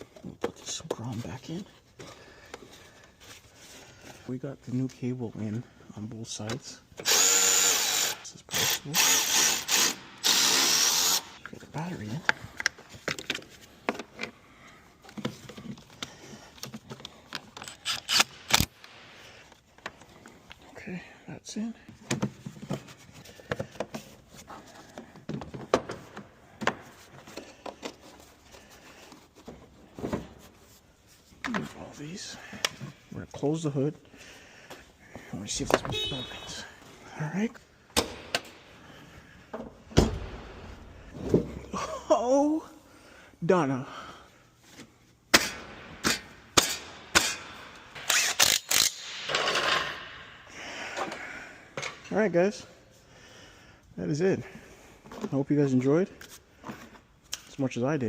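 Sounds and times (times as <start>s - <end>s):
tools and parts clicking: 15.0s - 19.0s, 46.1s - 50.0s.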